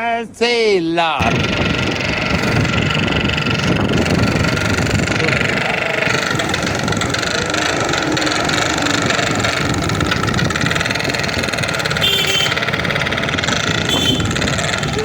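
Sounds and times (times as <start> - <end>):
motorcycle engine running: 1.2 - 15.0
toy horn steady tone: 5.4 - 15.0.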